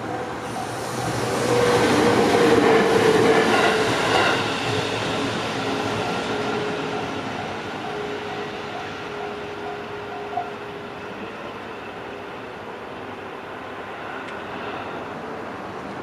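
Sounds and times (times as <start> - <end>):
electric train passing: 0.0 - 16.0
level crossing warning bell: 6.9 - 11.1.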